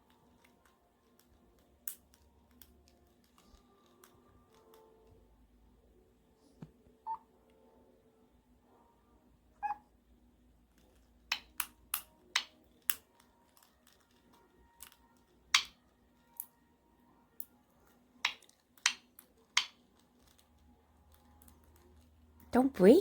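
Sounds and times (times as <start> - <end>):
bird chirps: 9.6 - 9.8.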